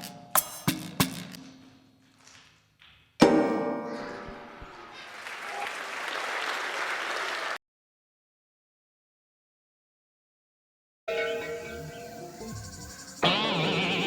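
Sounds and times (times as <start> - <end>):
audience applause: 4.6 - 7.6.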